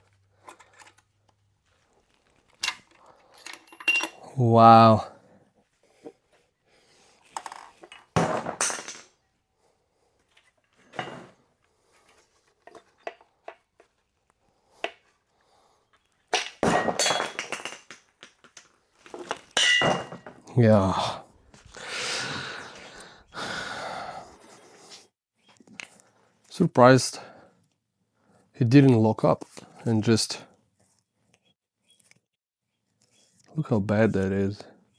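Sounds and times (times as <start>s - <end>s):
metal engine parts clinking: 0.1s - 1.2s, 2.1s - 4.3s, 10.8s - 11.4s, 16.3s - 20.4s.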